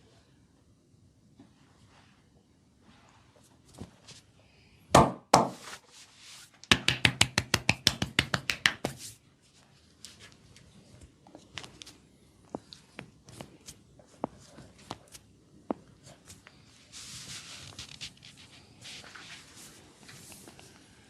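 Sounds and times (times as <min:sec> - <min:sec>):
hands slapping on body: 0:06.6 - 0:09.1.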